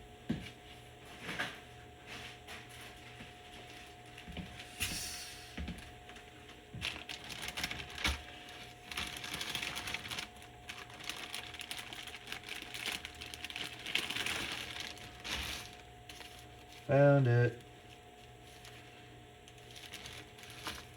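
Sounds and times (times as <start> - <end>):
faint steady hum: 0.0 - 20.9
rummaging through small parts: 6.8 - 16.9, 19.5 - 20.9.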